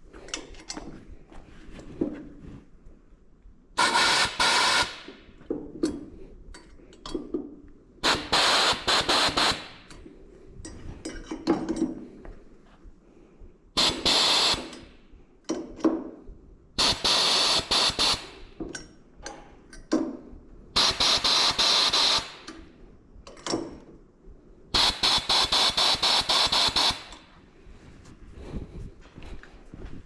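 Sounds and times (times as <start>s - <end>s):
compressed air blow gun hissing: 3.8s - 5.1s, 8.0s - 9.9s, 13.8s - 14.8s, 16.8s - 18.4s, 20.8s - 22.5s, 24.8s - 27.2s.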